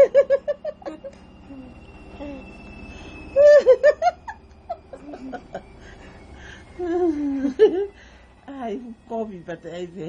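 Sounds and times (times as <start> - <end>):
child giggling: 0.0 - 1.7.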